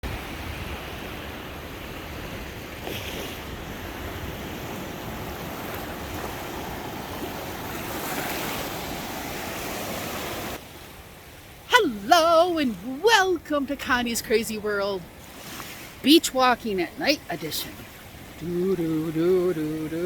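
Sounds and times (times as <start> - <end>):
wind rumbling on microphone: 0.0 - 11.2
surf breaking on beach: 0.0 - 20.0.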